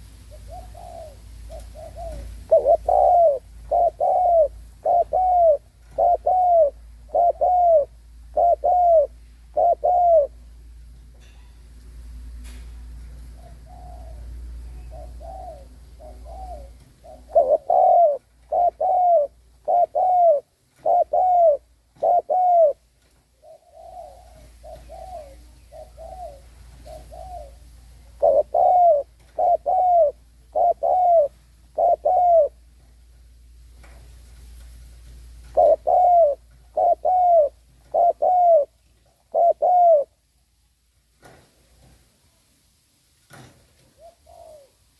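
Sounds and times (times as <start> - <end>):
dove cooing: 0.0 - 10.5, 13.3 - 32.7, 35.4 - 40.2, 43.8 - 44.9.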